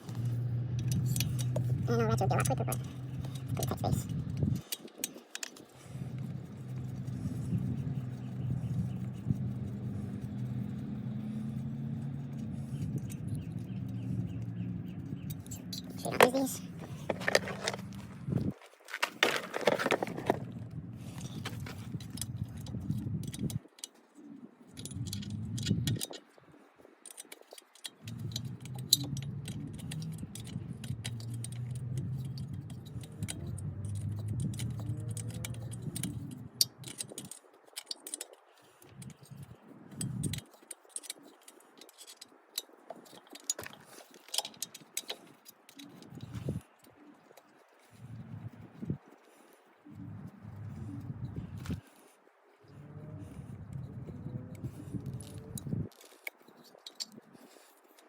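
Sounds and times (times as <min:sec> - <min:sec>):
low steady hum: 0:00.0 - 0:04.8
metal tools and bolts clinking: 0:00.0 - 0:10.8, 0:12.0 - 0:24.0, 0:24.7 - 0:49.2, 0:53.5 - 0:58.0.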